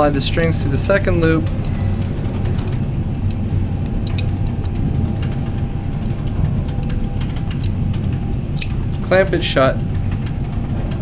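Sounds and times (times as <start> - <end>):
low rumble: 0.0 - 11.0
metal clasp clicking: 4.0 - 4.8.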